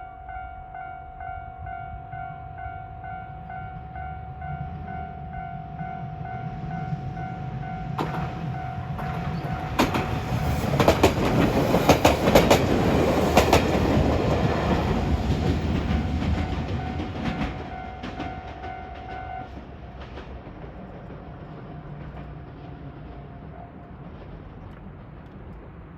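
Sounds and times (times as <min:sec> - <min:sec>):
train wheels clacking over rail joints: 0:07.9 - 0:25.9.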